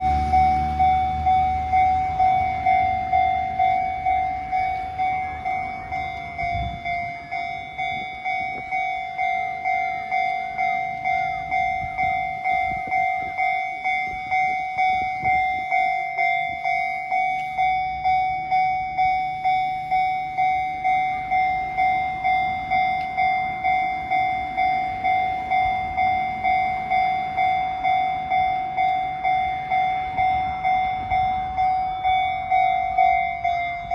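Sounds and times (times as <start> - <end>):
level crossing alarm ringing: 0.0 - 33.9
train rumbling over rails: 0.0 - 33.9.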